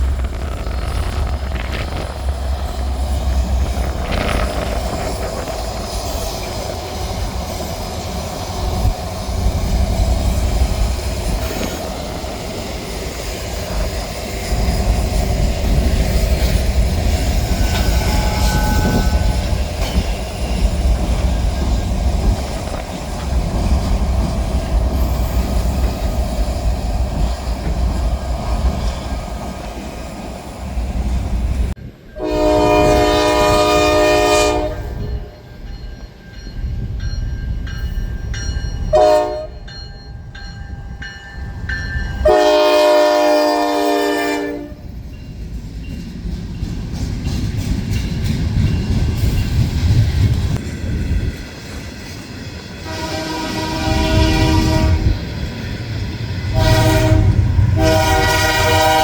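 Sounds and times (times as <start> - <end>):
wheel-on-rail noise: 0.0 - 31.7
railroad cars rolling past: 0.0 - 59.0
high wheel squeal: 17.2 - 21.0.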